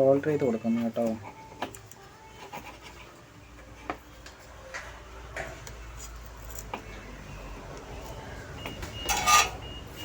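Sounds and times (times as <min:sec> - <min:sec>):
tools clicking and tapping: 0:03.8 - 0:07.0.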